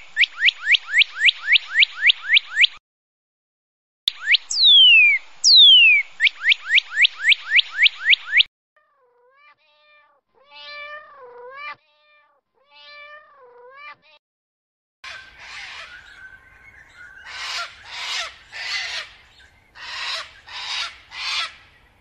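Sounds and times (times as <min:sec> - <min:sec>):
sharp rising animal chirps: 0:04.2 - 0:08.5
soft wavering animal calls: 0:15.0 - 0:22.0.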